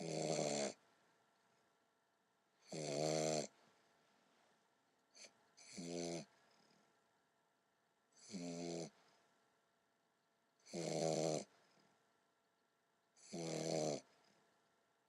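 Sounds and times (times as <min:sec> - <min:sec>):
puppy snoring: 0:00.0 - 0:00.8, 0:02.6 - 0:03.6, 0:05.1 - 0:06.8, 0:08.2 - 0:09.1, 0:10.6 - 0:11.8, 0:13.2 - 0:14.4.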